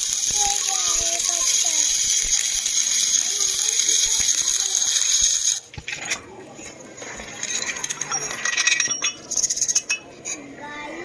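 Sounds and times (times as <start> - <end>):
welding arc crackling: 0.0 - 6.0, 7.2 - 9.9.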